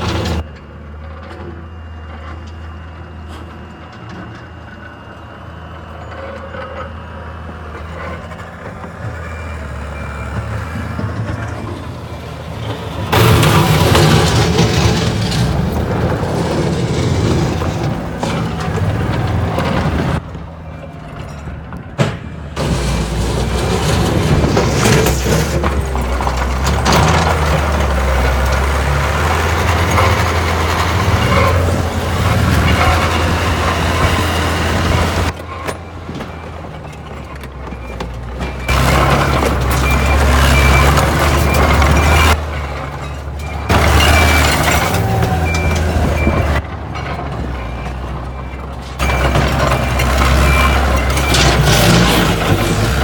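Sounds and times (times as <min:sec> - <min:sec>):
diesel engine running: 0:00.0 - 0:53.0.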